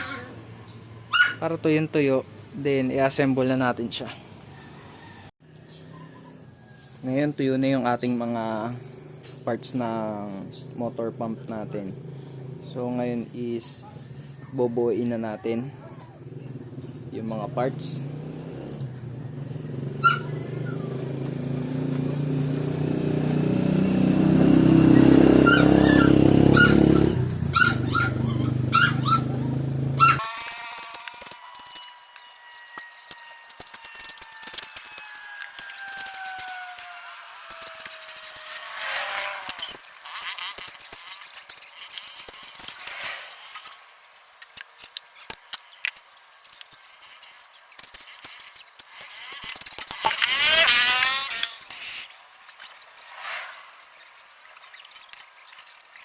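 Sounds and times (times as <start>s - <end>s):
short high yelps: 1.1s - 1.4s, 20.0s - 20.3s, 25.4s - 30.3s
motor running: 30.0s - 43.0s, 47.8s - 52.1s.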